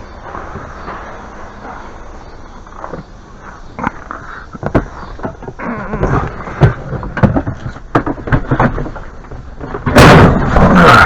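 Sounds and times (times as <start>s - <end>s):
objects knocking and clattering: 4.6s - 11.0s.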